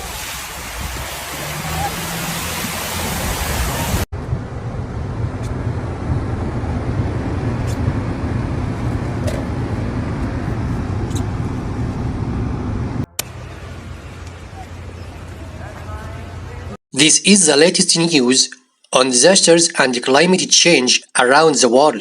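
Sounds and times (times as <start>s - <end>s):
loud even hiss: 0.0s - 4.1s
rumble of motor vehicles: 0.0s - 16.8s.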